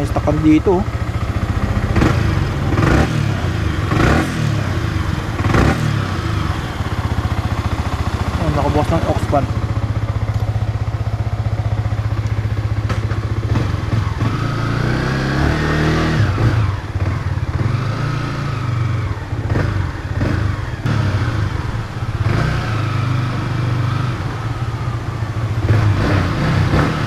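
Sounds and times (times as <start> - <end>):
motorcycle engine idling and revving: 0.0 - 27.0.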